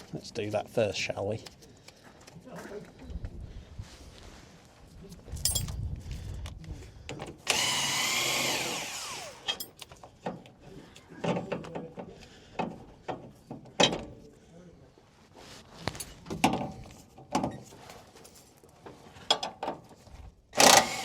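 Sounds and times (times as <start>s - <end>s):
metal parts clanking: 5.4s - 5.8s
power drill whining and spinning down: 7.4s - 9.6s, 20.6s - 21.0s.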